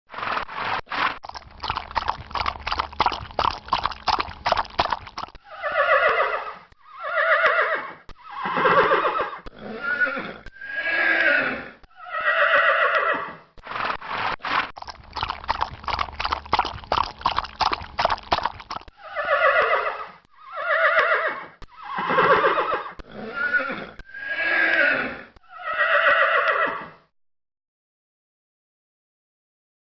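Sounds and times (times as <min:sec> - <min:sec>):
hooves splashing through water: 0:01.0 - 0:05.5, 0:14.0 - 0:19.0
horse whinnying: 0:04.5 - 0:13.9, 0:17.8 - 0:27.0.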